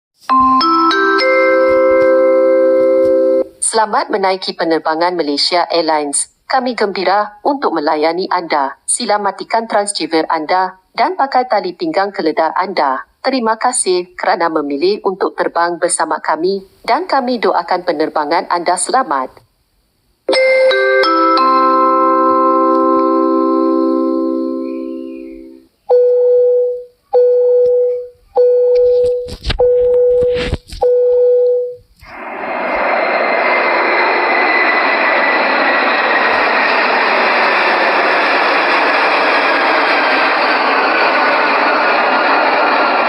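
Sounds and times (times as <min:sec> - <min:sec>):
airliner cabin chime: 0:00.3 - 0:03.5, 0:20.3 - 0:29.0
held chord: 0:00.3 - 0:03.5, 0:20.3 - 0:25.7.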